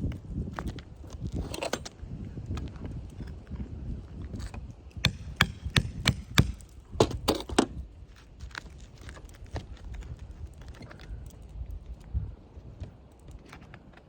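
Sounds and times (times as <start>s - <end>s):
tool knocking on roof shingle: 5.0s - 7.7s.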